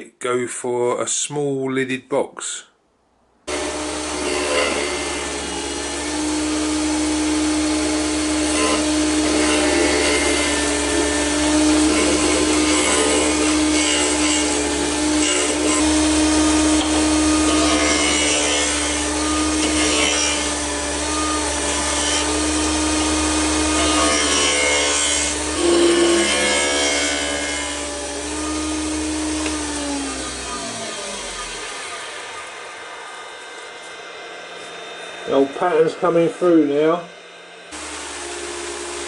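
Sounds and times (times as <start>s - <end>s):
turning tool scraping wood: 3.5s - 32.0s
lathe motor hum: 3.5s - 39.0s
lathe spinning down: 3.5s - 39.0s.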